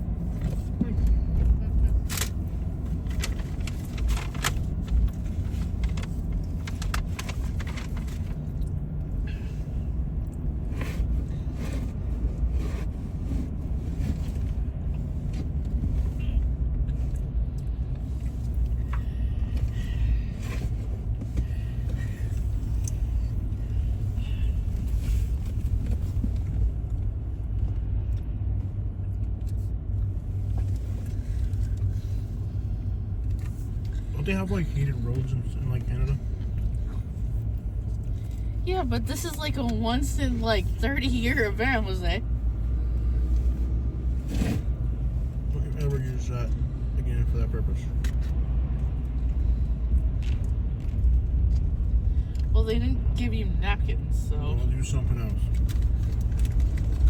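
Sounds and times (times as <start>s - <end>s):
vehicle cabin road rumble: 0.0s - 57.0s.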